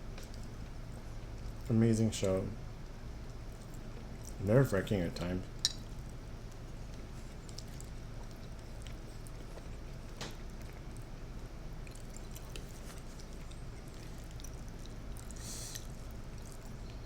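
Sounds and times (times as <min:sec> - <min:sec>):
steady low hum: 0:00.0 - 0:17.0
person chewing food: 0:02.8 - 0:04.4, 0:05.5 - 0:17.0.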